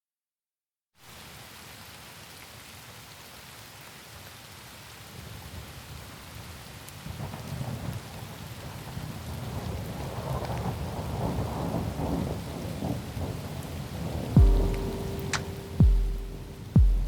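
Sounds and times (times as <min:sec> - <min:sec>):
steady rain hiss: 0:01.0 - 0:16.8
low rumble of thunder: 0:07.2 - 0:15.2.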